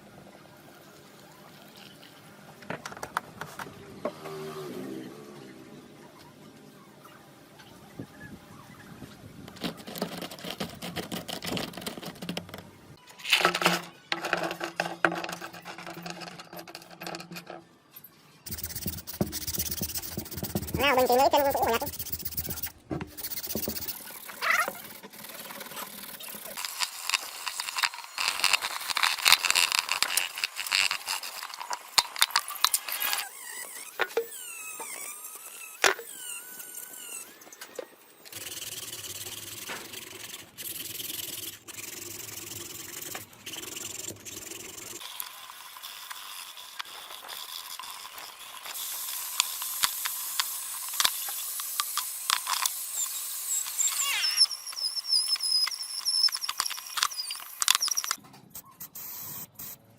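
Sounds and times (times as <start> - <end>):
metal scraping with squeaks: 9.6 - 37.7, 52.4 - 58.8.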